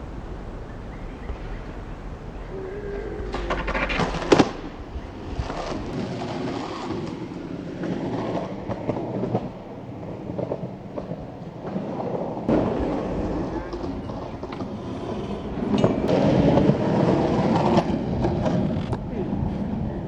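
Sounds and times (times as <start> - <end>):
skateboard wheels rolling on concrete: 0.0 - 20.0
skateboard hitting concrete: 3.3 - 4.7, 12.5 - 14.9.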